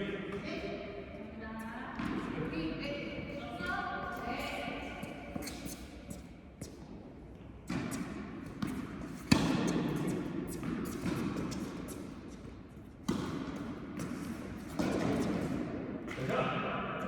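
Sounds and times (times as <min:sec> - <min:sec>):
tennis balls bouncing: 0:01.6 - 0:03.8, 0:07.7 - 0:16.3
tennis balls hit by rackets: 0:01.9 - 0:02.6, 0:07.6 - 0:16.3.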